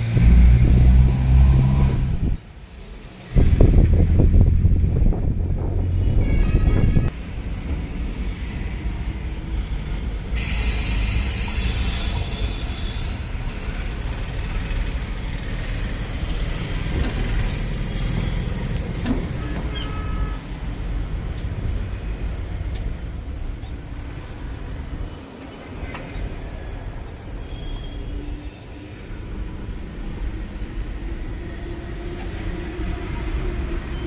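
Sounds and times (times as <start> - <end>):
diesel engine rumbling: 0.0 - 2.6
hiss: 10.2 - 13.8.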